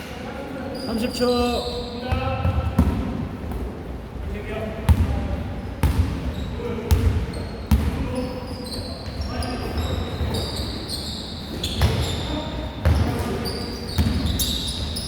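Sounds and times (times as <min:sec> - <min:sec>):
sneakers squeaking on floor: 0:00.7 - 0:02.9, 0:04.9 - 0:15.0
basketball bouncing on hard court: 0:04.9 - 0:05.2, 0:05.8 - 0:06.3, 0:06.9 - 0:08.0.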